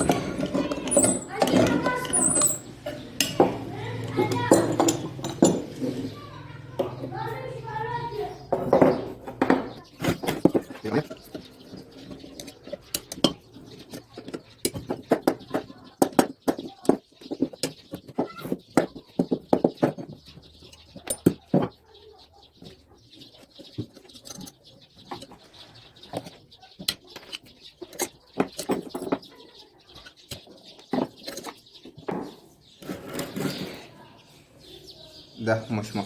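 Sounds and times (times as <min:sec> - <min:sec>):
hand tools knocking on metal: 0:00.0 - 0:21.8.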